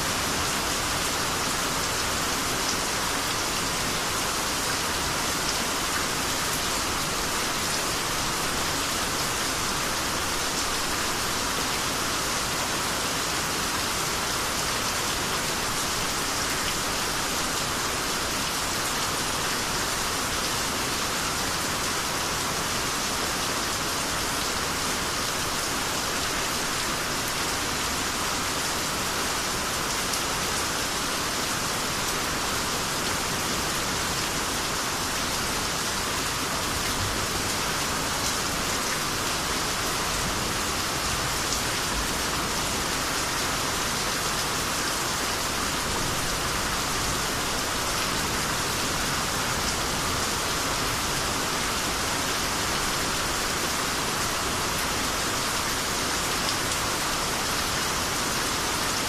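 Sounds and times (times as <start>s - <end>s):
rain pattering on surfaces: 0.1s - 59.0s.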